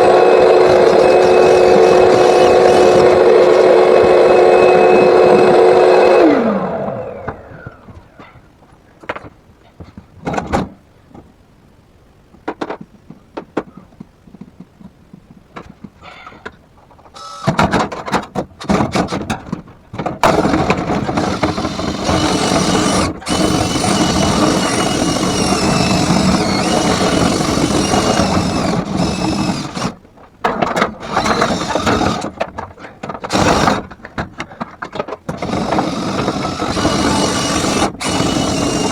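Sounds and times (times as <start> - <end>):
electric motor spinning down: 0.0 - 7.9, 20.3 - 30.0, 35.6 - 38.9
motor rushing and scraping: 0.0 - 7.9, 20.2 - 30.0, 31.0 - 32.4, 33.3 - 33.9, 35.4 - 38.9.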